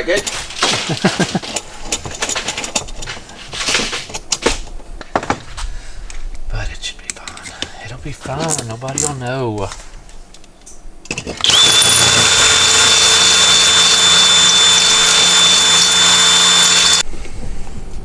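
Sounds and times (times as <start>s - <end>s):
electric drill whining: 11.1s - 17.0s.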